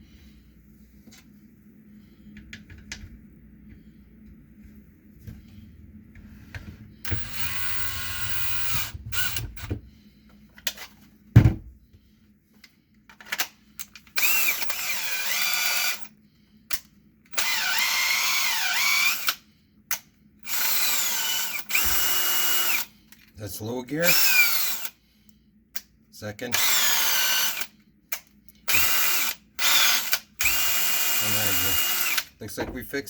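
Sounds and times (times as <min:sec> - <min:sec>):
cordless drill motor whirring: 0:07.0 - 0:09.9, 0:14.1 - 0:16.1, 0:17.3 - 0:19.4, 0:20.4 - 0:22.9, 0:24.0 - 0:25.0, 0:26.5 - 0:27.7, 0:28.6 - 0:32.3
low thump: 0:11.4 - 0:11.7.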